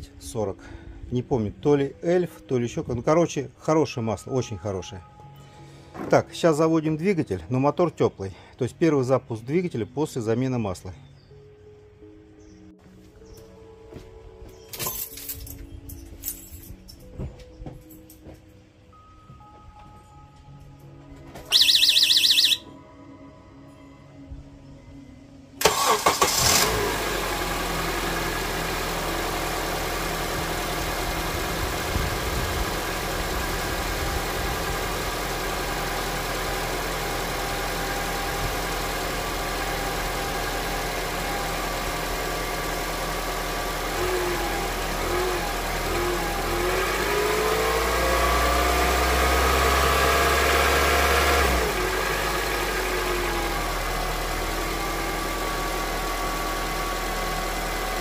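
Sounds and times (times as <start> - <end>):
engine revving: 25.6 - 35.6, 43.6 - 55.6
car engine cranking and idling: 25.6 - 58.0.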